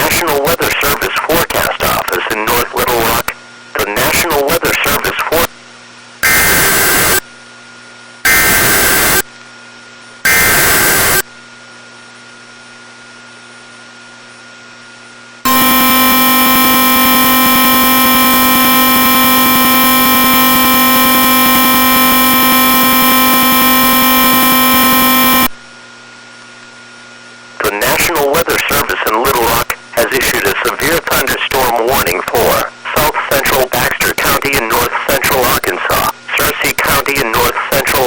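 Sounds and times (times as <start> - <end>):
buzzy alarm tone: 6.2 - 7.2, 8.3 - 9.3, 10.3 - 11.3, 15.5 - 25.5
digital data bursts: 6.2 - 7.2, 8.3 - 9.2, 10.3 - 11.2, 15.5 - 25.5.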